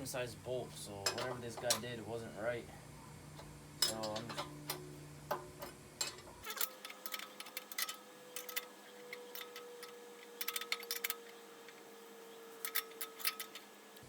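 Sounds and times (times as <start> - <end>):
ratchet wrench clicking: 6.5 - 11.3.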